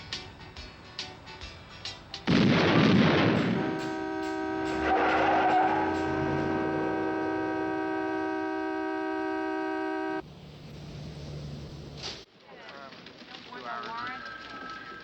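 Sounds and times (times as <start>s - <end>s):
loud explosion: 2.3s - 4.1s
car horn sounding steady chord: 3.0s - 10.2s.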